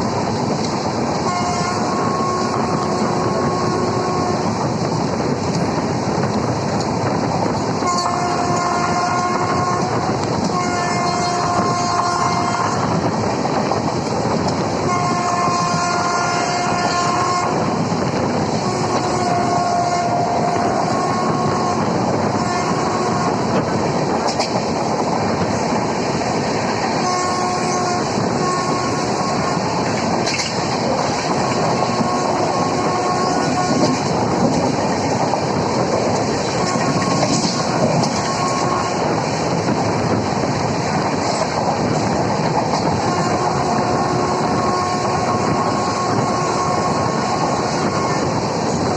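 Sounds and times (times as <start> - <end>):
train wheels rushing on rails: 0.0 - 48.9
two-tone train horn blasts: 1.2 - 4.7, 7.8 - 13.1, 14.8 - 17.9, 18.5 - 23.6, 26.9 - 34.6, 35.6 - 39.2, 42.7 - 48.8.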